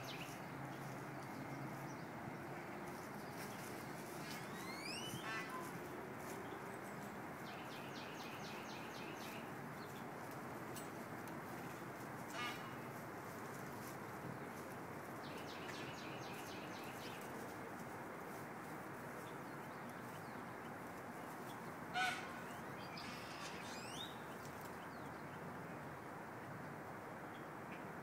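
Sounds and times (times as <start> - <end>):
peafowl honking call: 4.2 - 5.8, 12.3 - 12.9, 21.9 - 24.0
small bird trill: 4.4 - 5.4.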